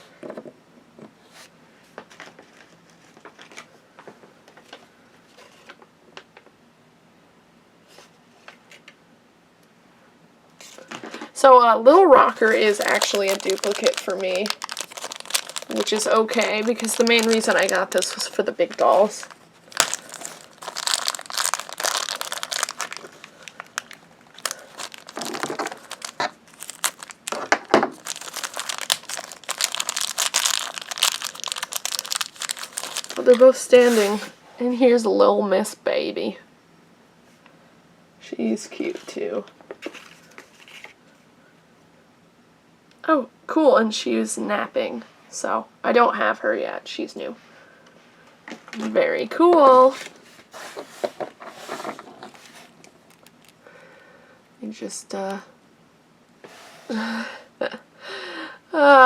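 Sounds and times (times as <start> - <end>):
plastic wrapping crinkling: 12.3 - 34.2, 52.3 - 53.8.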